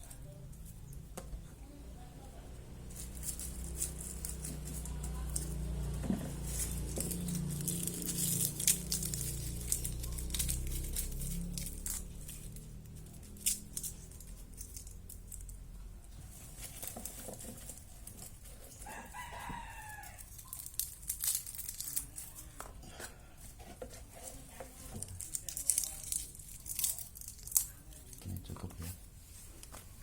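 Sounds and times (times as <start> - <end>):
rooster crowing: 18.8 - 20.5.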